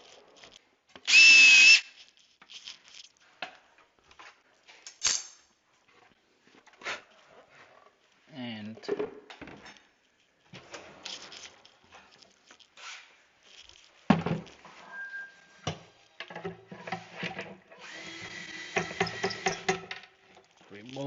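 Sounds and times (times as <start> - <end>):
power drill running: 1.1 - 1.8, 17.8 - 19.9
tool handling clicks and knocks: 15.6 - 17.9, 18.7 - 21.0.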